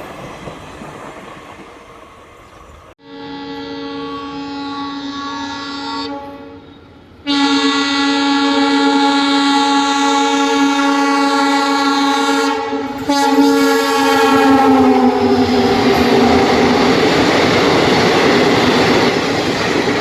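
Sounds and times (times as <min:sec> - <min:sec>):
locomotive horn blast: 0:03.0 - 0:17.1.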